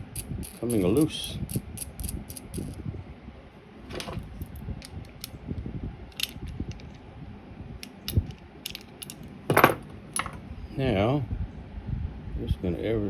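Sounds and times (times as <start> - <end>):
nut clicking on bolt: 1.5 - 2.8.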